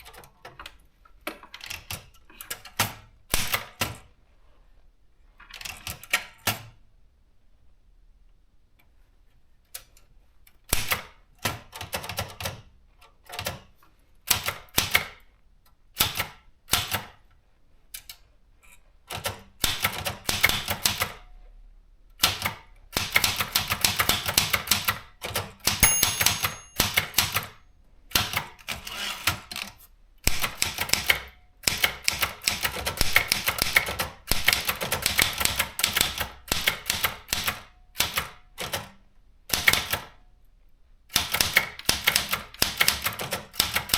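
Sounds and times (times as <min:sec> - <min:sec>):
typewriter key strikes: 0:24.0 - 0:27.5
typewriter bell ringing: 0:25.8 - 0:27.6.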